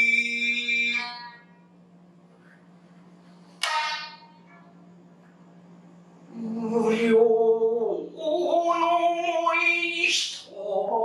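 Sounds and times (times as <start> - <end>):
lute stroke: 2.3 - 4.8.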